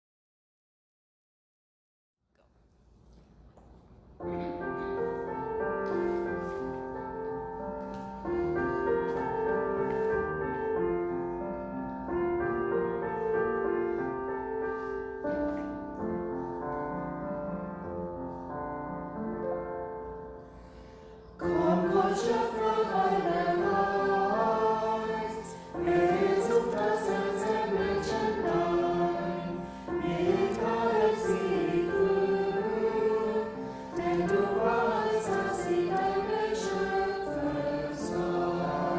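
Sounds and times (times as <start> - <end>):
choir singing: 21.4 - 38.9.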